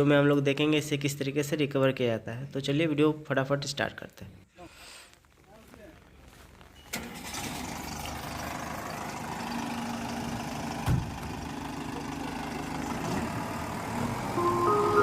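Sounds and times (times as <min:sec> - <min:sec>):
diesel engine running: 0:06.9 - 0:15.0.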